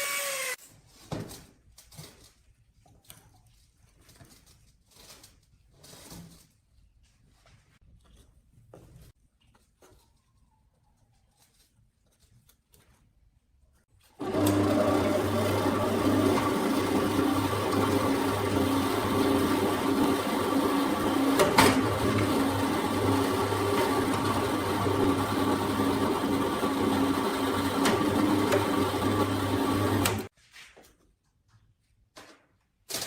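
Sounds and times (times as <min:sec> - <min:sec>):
small electric machine whirring: 0:00.0 - 0:00.6, 0:14.2 - 0:30.3.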